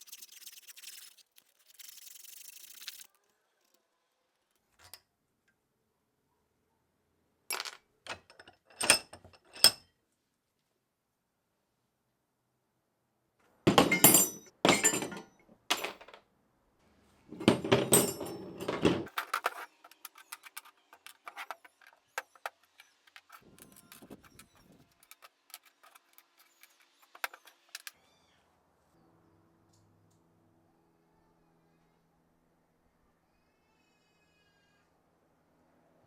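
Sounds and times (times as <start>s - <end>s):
metal parts clattering: 13.7s - 16.2s, 17.3s - 27.9s.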